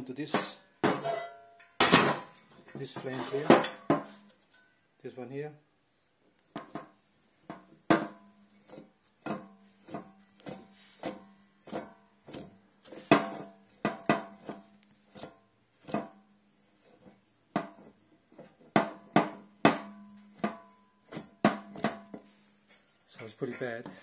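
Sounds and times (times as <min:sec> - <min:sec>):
metallic knocks of wheel bearing: 0:18.7 - 0:22.3.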